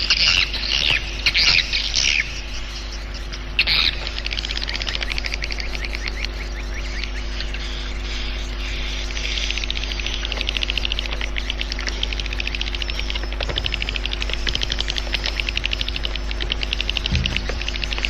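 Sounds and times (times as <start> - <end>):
low electrical hum: 0.0 - 18.0
swiftlet chirps twittering: 0.0 - 18.0
low thud: 17.1 - 18.0.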